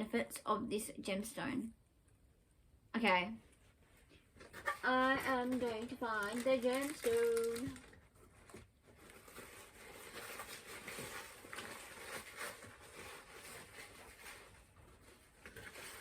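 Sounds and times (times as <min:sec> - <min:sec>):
faint packaging rustling: 0:03.4 - 0:16.0.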